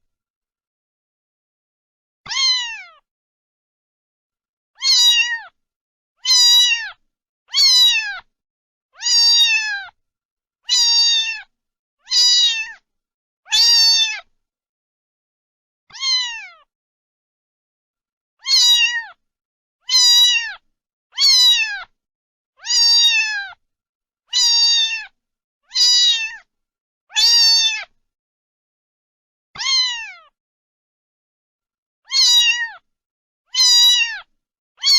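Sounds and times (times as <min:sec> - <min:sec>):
cat meowing: 0:02.3 - 0:03.0, 0:04.8 - 0:05.6, 0:06.2 - 0:08.3, 0:09.0 - 0:10.0, 0:10.7 - 0:12.8, 0:13.5 - 0:14.3, 0:15.9 - 0:16.7, 0:18.4 - 0:19.2, 0:19.9 - 0:20.6, 0:21.2 - 0:21.9, 0:22.6 - 0:23.6, 0:24.3 - 0:26.5, 0:27.1 - 0:27.9, 0:29.6 - 0:30.4, 0:32.1 - 0:32.8, 0:33.5 - 0:34.9.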